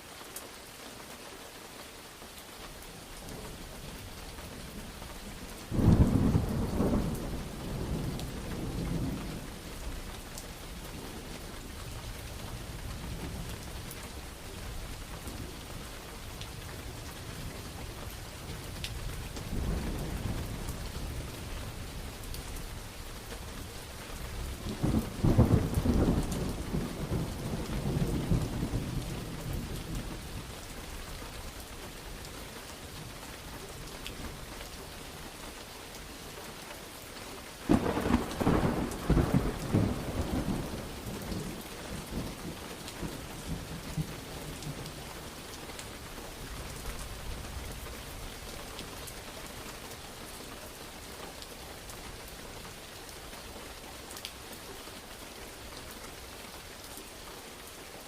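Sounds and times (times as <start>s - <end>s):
steady rain: 0.0s - 58.0s
rolling thunder: 5.7s - 9.6s, 24.4s - 30.3s, 37.7s - 45.0s.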